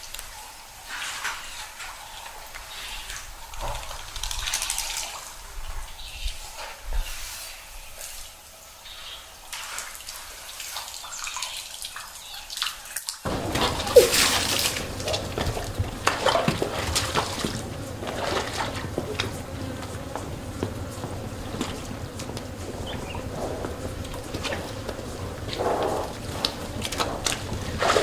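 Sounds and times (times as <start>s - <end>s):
water splashing and trickling: 9.3s - 28.0s.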